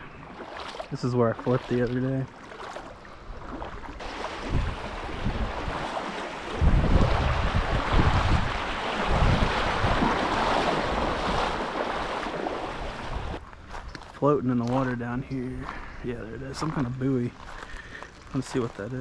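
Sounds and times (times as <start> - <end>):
rushing river water: 0.0 - 13.4
wind buffeting microphone: 3.2 - 14.0.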